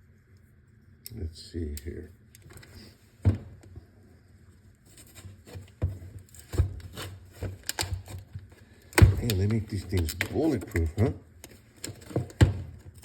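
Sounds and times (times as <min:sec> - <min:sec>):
plastic crackling: 0:06.3 - 0:13.0
knife cutting plastic packaging: 0:08.9 - 0:13.0.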